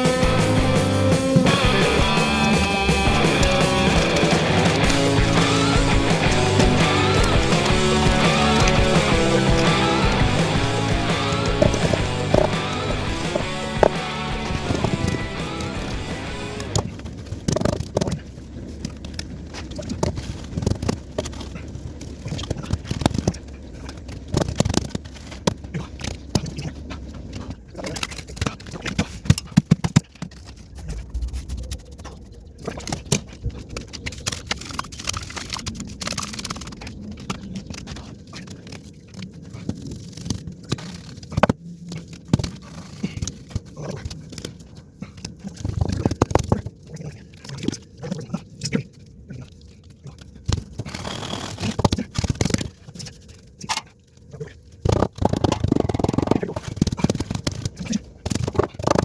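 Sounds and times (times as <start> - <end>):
knocks and clicks: 0.0 - 16.9
hand tool scraping: 0.0 - 46.6, 50.2 - 53.9.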